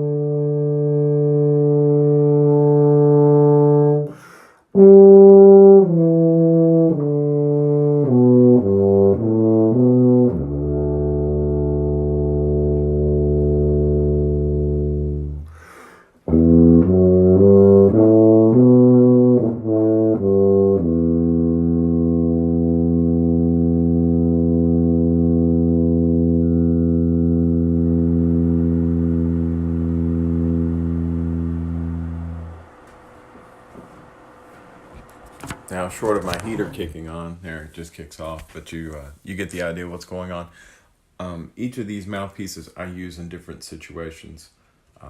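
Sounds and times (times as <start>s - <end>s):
tuba playing notes: 0.0s - 37.2s
player taking a breath: 4.1s - 4.7s, 15.5s - 16.2s, 40.5s - 41.0s.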